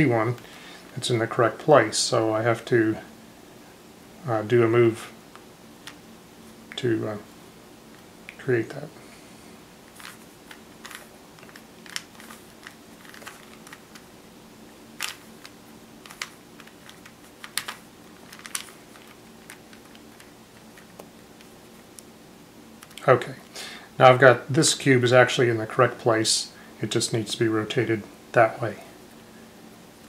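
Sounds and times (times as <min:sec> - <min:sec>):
puzzle cube clicking as twisted: 0:10.0 - 0:14.0, 0:15.0 - 0:21.0.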